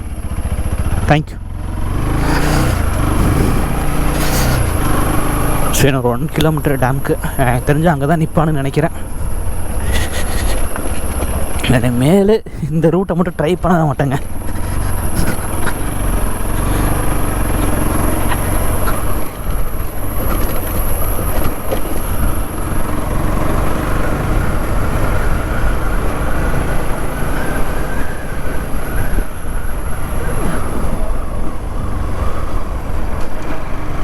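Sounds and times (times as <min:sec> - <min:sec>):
motorcycle engine running: 0:00.0 - 0:12.2, 0:13.0 - 0:34.0
wind rumble on microphone: 0:02.6 - 0:04.8.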